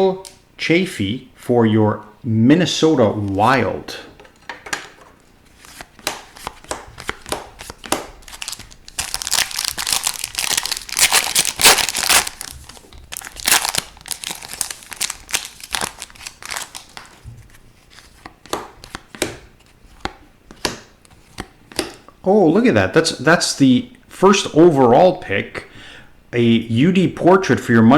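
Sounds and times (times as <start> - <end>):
cards clicking and snapping: 5.6 - 17.2
foil wrapper tearing and crinkling: 6.4 - 17.2.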